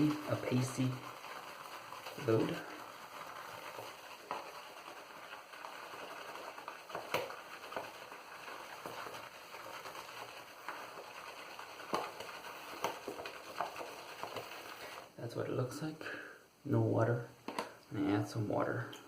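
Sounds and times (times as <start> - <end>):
shaving brush swishing in bowl: 0.0 - 15.2.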